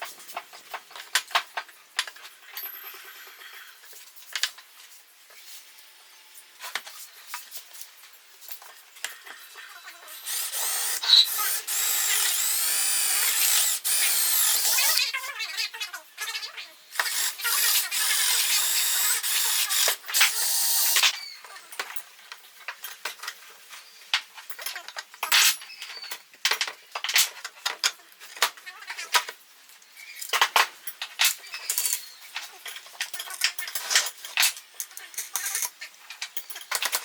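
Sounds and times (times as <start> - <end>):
handheld power tool running: 10.1 - 15.0, 16.9 - 21.1
tools clicking on a workbench: 30.2 - 37.0.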